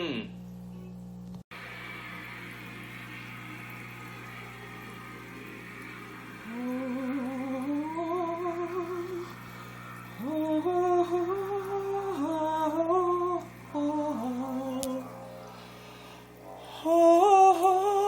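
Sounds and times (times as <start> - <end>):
steady low hum: 0.0 - 18.0
person singing wordless melody: 6.4 - 9.4, 10.2 - 15.1, 16.7 - 18.0.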